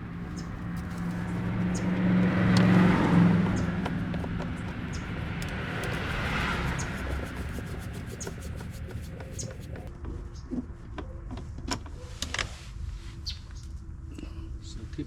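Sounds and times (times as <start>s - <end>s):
vehicle passing by: 0.0s - 9.9s.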